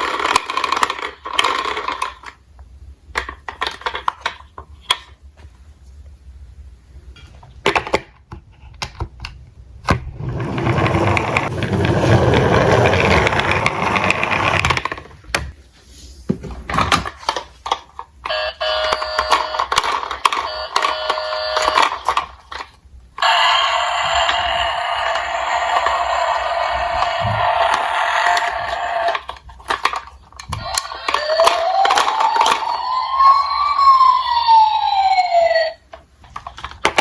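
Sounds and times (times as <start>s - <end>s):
toy cars clicking and clattering: 0.0s - 2.4s, 3.1s - 5.1s, 16.8s - 34.0s, 36.2s - 37.0s
electronic toy siren beeping: 18.3s - 22.1s, 23.2s - 29.2s, 30.6s - 35.8s.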